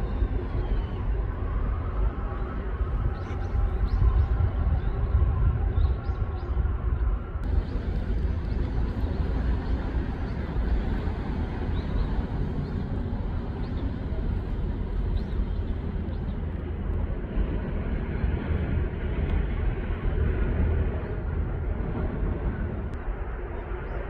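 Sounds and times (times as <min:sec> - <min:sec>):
low rumble: 0:00.0 - 0:24.0
even rushing noise: 0:07.4 - 0:16.6.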